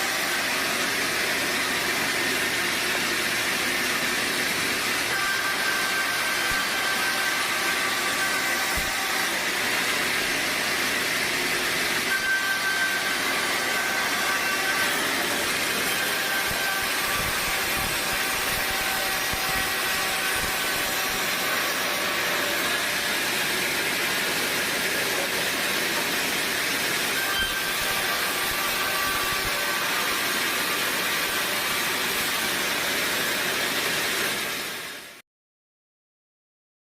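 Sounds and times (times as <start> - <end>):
sawmill machinery hiss: 15.0 - 27.2.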